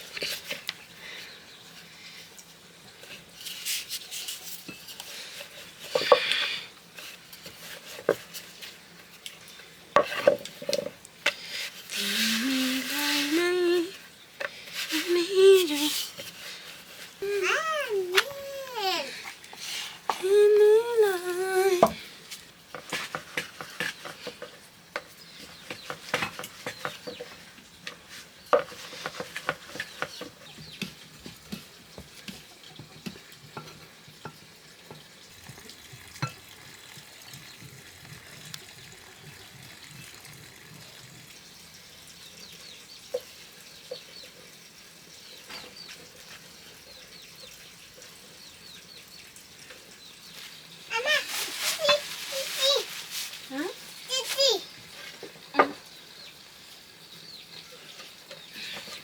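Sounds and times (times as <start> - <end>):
dough frying in hot oil: 0.0 - 59.0
child crying out: 15.0 - 16.0, 17.2 - 19.2, 20.2 - 22.0.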